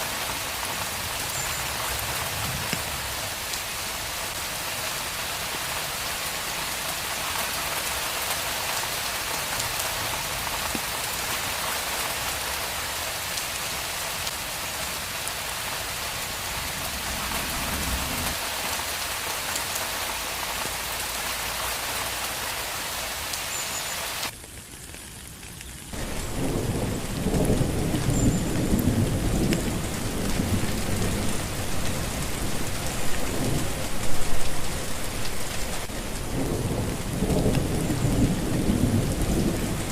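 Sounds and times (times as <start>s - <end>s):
heavy rain on street: 0.0s - 39.9s
rolling thunder: 16.5s - 18.4s, 26.0s - 39.9s.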